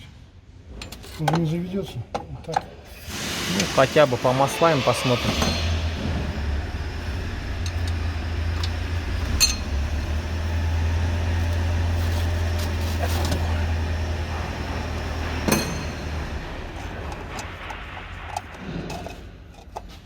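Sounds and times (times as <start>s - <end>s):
engine cranking on starter: 5.7s - 19.8s.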